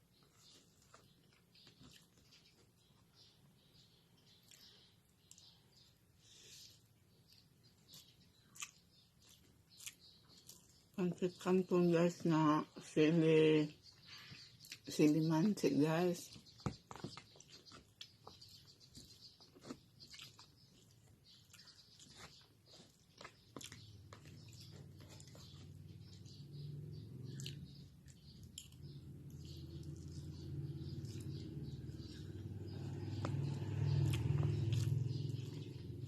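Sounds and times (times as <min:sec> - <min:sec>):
person chewing noodles: 0:00.0 - 0:03.1, 0:04.4 - 0:11.0, 0:17.1 - 0:26.3, 0:27.3 - 0:33.4, 0:34.0 - 0:36.0.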